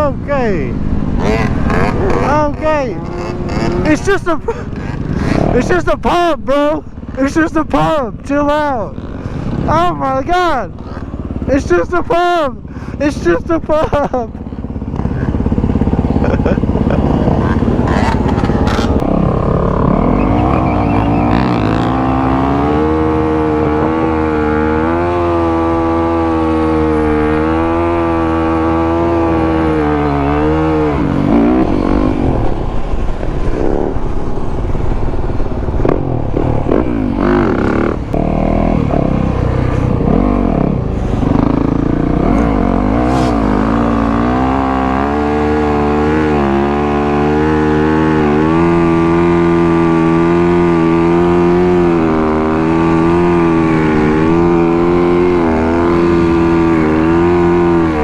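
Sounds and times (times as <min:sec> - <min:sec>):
dirt bike engines revving: 0:00.0 - 0:58.0.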